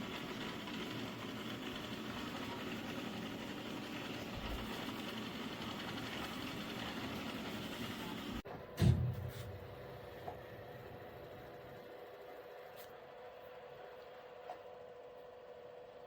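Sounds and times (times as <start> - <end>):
robot vacuum running: 0.0 - 8.4.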